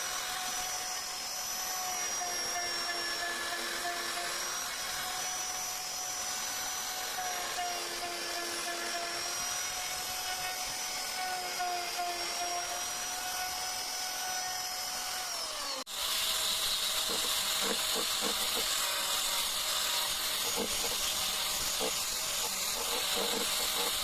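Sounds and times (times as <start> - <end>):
power carving tool whining: 0.0 - 24.0.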